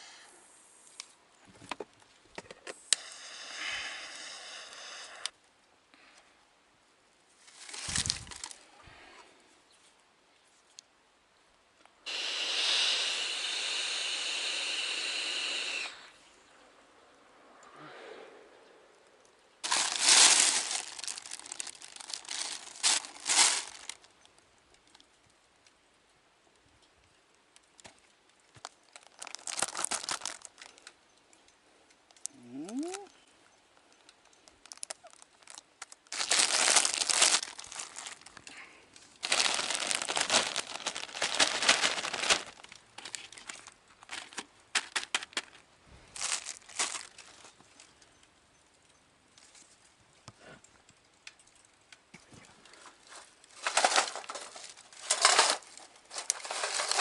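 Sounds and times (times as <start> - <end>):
packaging crinkling and tearing: 7.5 - 8.6, 19.6 - 25.1, 28.5 - 30.9, 34.5 - 47.6, 53.0 - 57.0.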